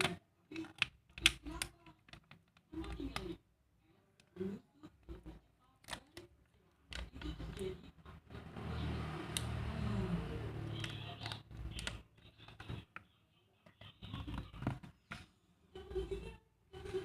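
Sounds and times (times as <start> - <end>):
small clicks and taps: 0.0 - 3.4.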